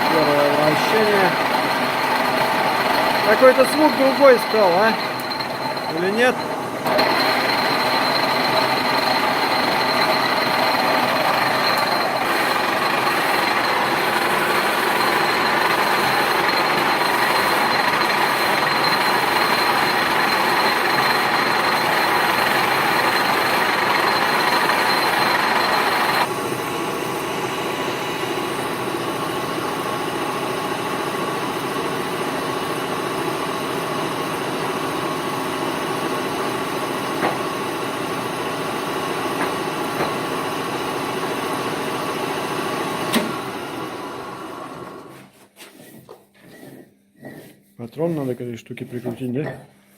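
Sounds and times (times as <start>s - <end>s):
lathe gear noise: 0.0s - 26.3s, 27.7s - 45.1s
thin high whine: 0.0s - 26.4s.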